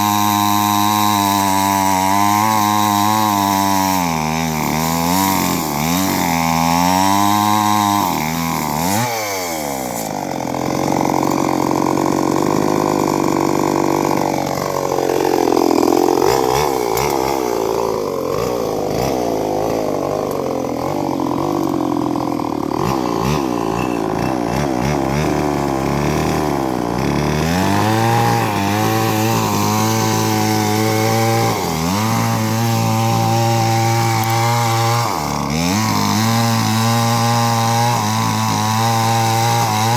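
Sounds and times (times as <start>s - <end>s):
chainsaw cutting wood: 0.0s - 39.9s.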